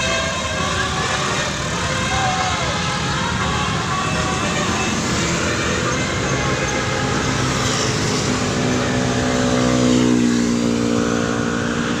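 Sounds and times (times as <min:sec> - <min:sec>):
musical vehicle horn notes: 0:00.0 - 0:09.0.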